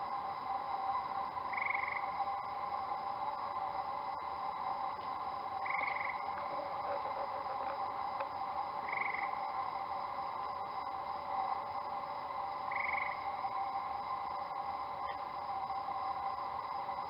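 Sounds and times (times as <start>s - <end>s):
frog chorus: 0.0s - 17.0s
frog trilled call: 1.5s - 2.0s, 5.6s - 7.8s, 8.8s - 9.4s, 12.7s - 13.2s.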